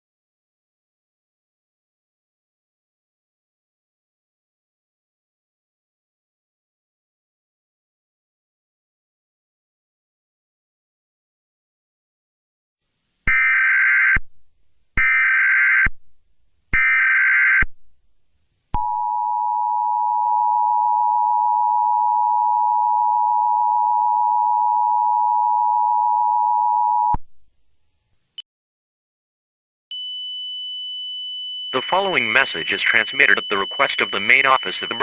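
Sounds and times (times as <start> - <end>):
digital data bursts: 31.8 - 35.0
high steady tone: 31.8 - 35.0
two-tone attention signal: 31.8 - 35.0.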